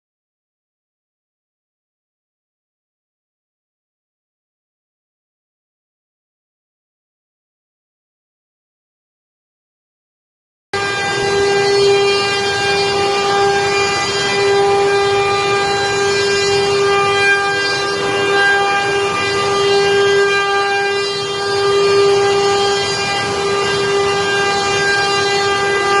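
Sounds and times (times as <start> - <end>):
woodworking machine spindle whining: 10.8 - 26.0.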